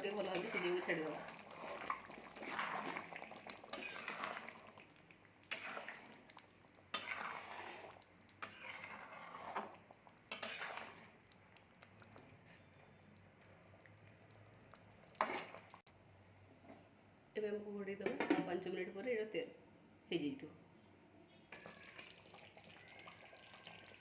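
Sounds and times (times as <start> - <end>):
spoon scraping metal pot: 0.0 - 4.6, 5.5 - 6.3, 6.9 - 11.2, 15.0 - 15.8.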